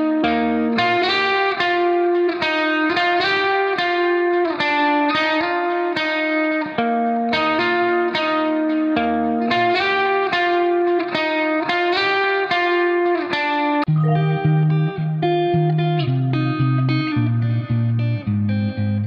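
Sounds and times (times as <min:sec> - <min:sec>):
guitar plucked notes: 0:00.0 - 0:19.0.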